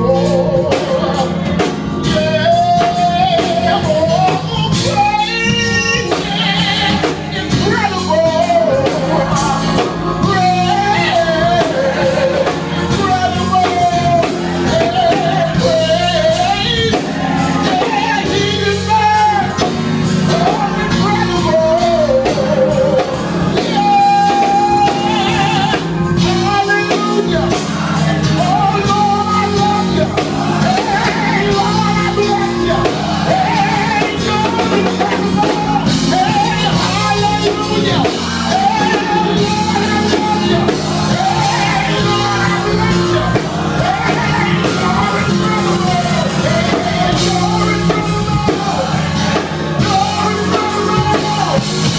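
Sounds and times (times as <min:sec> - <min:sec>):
instrumental backing with bass line: 0:00.0 - 0:51.9
person singing: 0:00.0 - 0:51.9.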